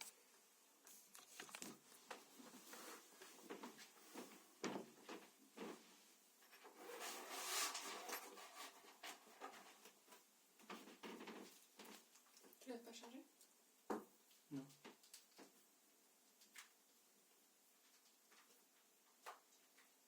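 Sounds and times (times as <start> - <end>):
objects clicking and knocking: 1.0 - 1.8.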